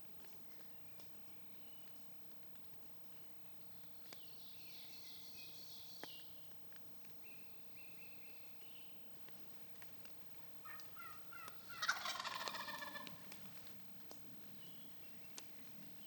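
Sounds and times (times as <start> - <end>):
songbirds singing: 3.0 - 16.0.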